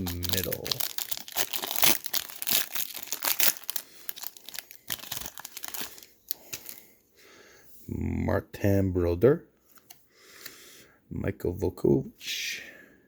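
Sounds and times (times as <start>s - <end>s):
wrapper tearing and crinkling: 0.0s - 6.8s.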